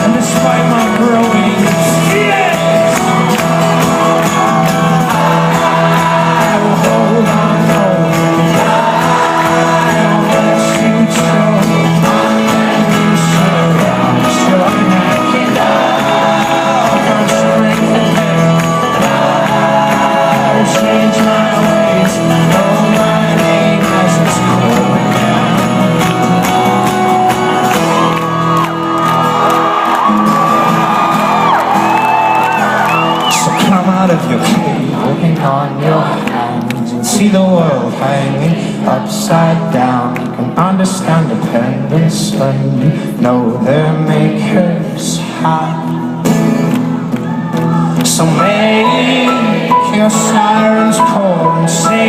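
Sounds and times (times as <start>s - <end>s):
live folk-rock band: 0.0s - 52.0s
audience shouts and whoops: 2.0s - 6.9s, 27.2s - 33.9s, 46.9s - 48.0s.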